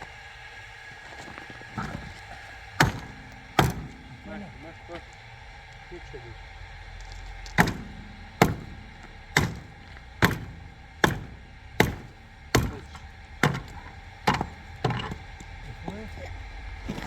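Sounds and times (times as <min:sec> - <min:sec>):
striking tool blows with ringing: 0:02.8 - 0:05.2, 0:07.4 - 0:16.2.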